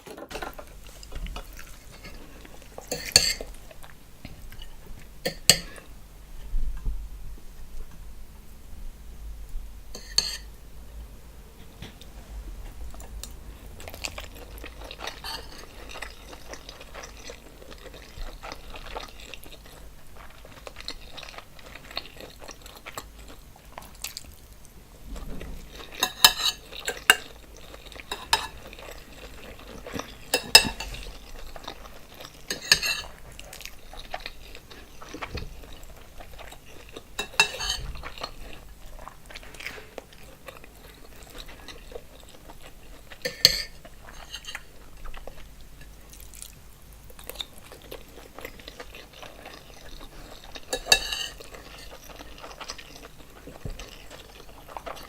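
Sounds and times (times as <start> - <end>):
wet chewing and crackling: 0.0 - 5.9, 12.0 - 55.0.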